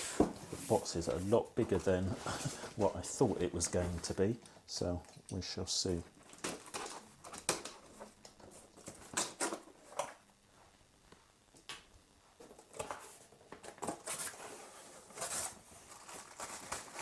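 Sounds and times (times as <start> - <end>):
cardboard scrapes and rustles: 13.9 - 17.0.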